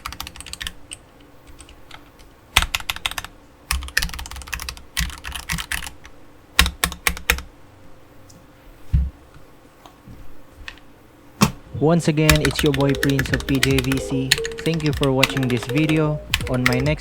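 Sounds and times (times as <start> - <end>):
keyboard keys clicking: 2.6 - 5.9, 12.3 - 17.0.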